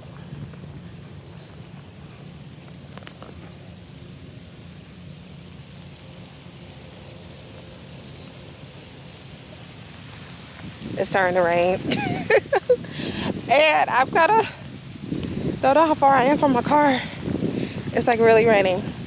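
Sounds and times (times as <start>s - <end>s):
light rain hiss: 0.0s - 19.0s
raindrop ticks: 1.3s - 3.7s, 14.5s - 18.6s.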